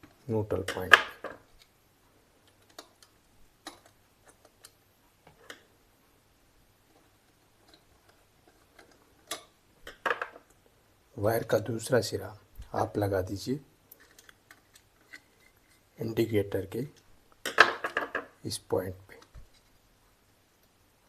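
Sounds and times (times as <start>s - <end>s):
clicks and taps of wiring work: 2.4s - 5.6s, 6.9s - 10.6s.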